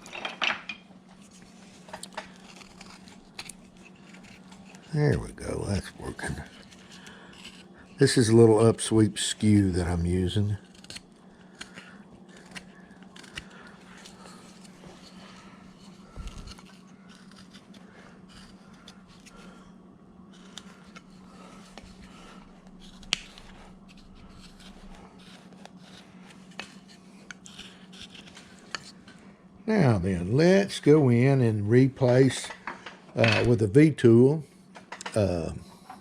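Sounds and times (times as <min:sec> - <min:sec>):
steady low hum: 0:00.0 - 0:36.0
knife scraping wood: 0:01.2 - 0:08.6, 0:09.4 - 0:19.6, 0:20.3 - 0:29.2.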